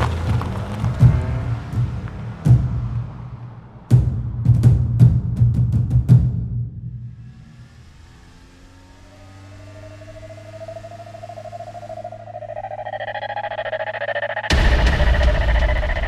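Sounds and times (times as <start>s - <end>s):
loud beat: 0.7s - 6.6s, 14.4s - 16.0s
low drone: 6.7s - 16.0s
rising electronic tone: 8.0s - 16.0s.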